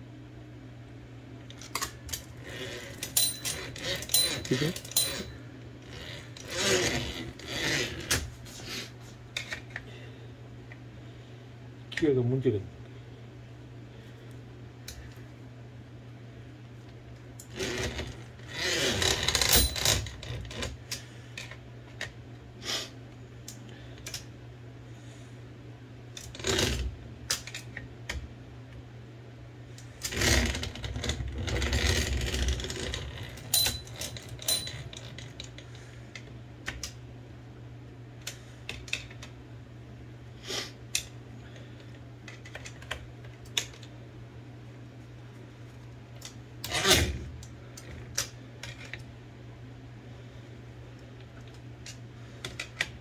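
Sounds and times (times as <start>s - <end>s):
typewriter carriage clicking and rattling: 19.0s - 20.2s.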